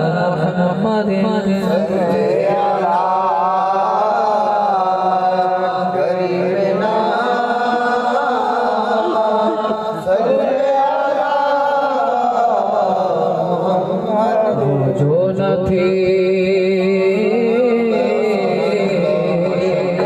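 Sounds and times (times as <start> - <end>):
layered voices singing melody: 0.8 - 15.2.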